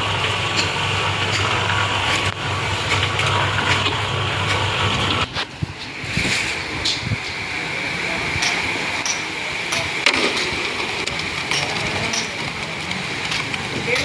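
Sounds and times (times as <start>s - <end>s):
construction machine engine running: 0.0s - 14.0s.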